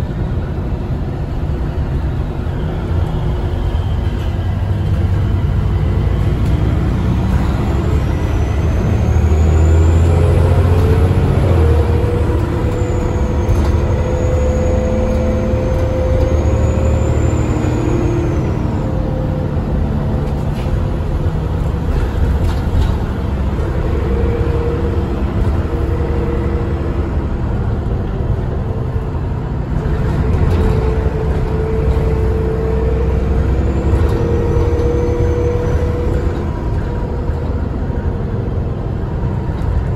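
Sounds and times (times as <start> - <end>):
bus diesel engine droning: 0.0 - 39.9
high turbocharger whistle: 8.3 - 19.3.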